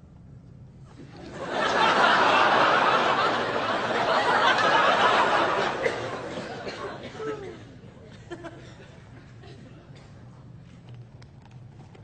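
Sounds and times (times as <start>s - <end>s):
audience laughing: 1.0s - 9.5s.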